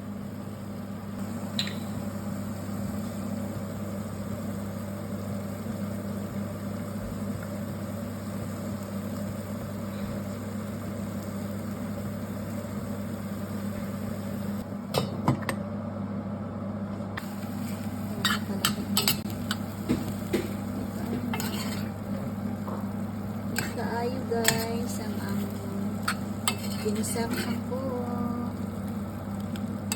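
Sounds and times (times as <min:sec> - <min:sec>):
appliance electric hum: 0:00.0 - 0:29.9
utensils clinking against a pan: 0:18.2 - 0:19.6, 0:21.2 - 0:21.9, 0:26.0 - 0:27.6.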